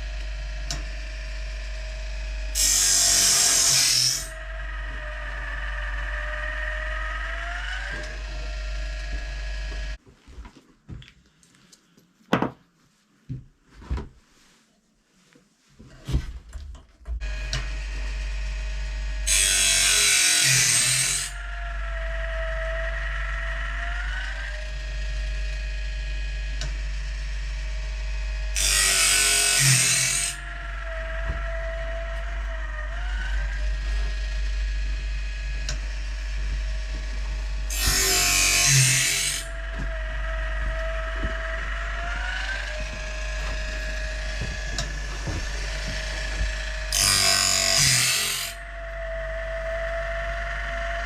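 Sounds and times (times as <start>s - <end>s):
electric motor humming: 28.5s - 51.0s.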